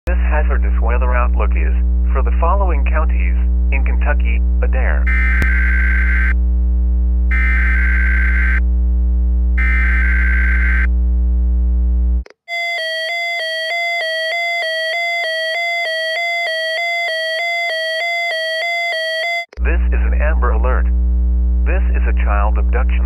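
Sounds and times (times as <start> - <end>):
mains hum: 0.1 - 12.2, 19.6 - 23.0
buzzy digital data tones: 5.0 - 6.4, 7.3 - 8.6, 9.6 - 10.9.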